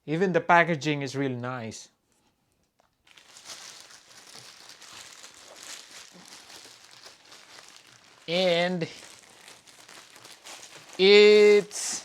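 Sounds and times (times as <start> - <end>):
packaging crinkling and rustling: 2.7 - 12.0.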